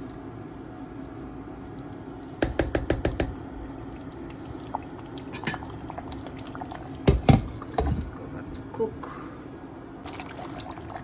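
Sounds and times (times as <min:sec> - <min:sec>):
soup bubbling in a pot: 0:00.0 - 0:08.7, 0:09.5 - 0:11.0
utensil knocking on pot: 0:02.4 - 0:03.4.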